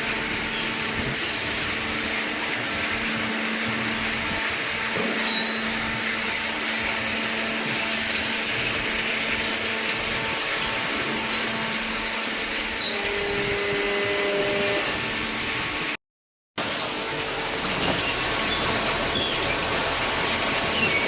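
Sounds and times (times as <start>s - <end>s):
baler machine hum: 0.0s - 16.0s.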